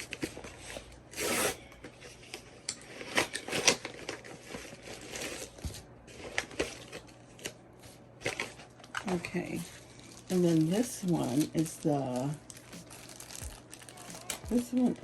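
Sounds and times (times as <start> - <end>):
packaging rustling and clicking: 8.2 - 15.0
packaging tearing: 9.8 - 15.0.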